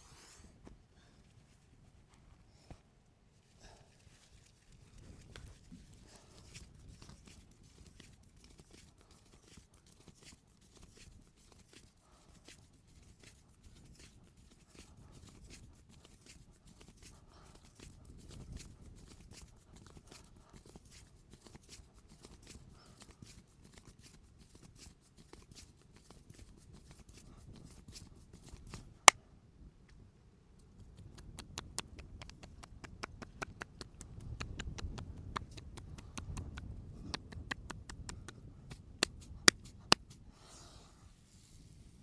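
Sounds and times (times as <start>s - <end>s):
hands patting head and shoulders: 30.8s - 40.2s.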